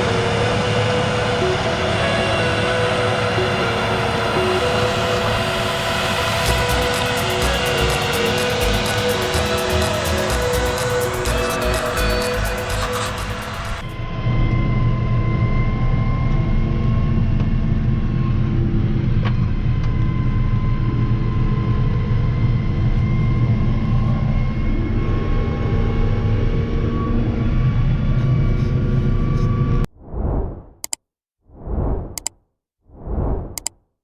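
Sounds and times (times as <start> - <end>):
thin steady whine: 0.0 - 14.0
tractor engine running: 6.0 - 13.9.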